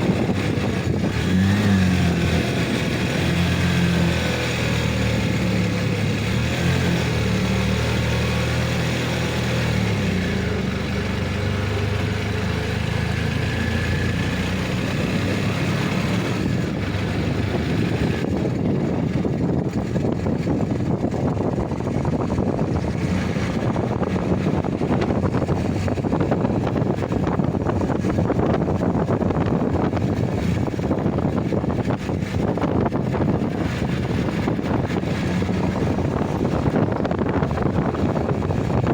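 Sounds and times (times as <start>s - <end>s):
motor engine humming: 0.0s - 38.9s
rough rushing noise: 0.0s - 38.9s.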